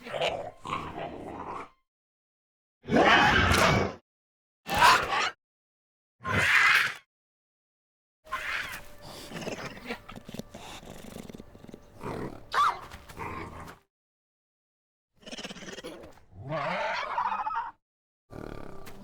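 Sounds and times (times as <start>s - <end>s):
creature growls and grunts: 0.0s - 1.8s, 2.8s - 4.0s, 8.3s - 13.8s, 15.2s - 19.0s
high creature shriek: 6.3s - 7.0s, 8.3s - 8.8s.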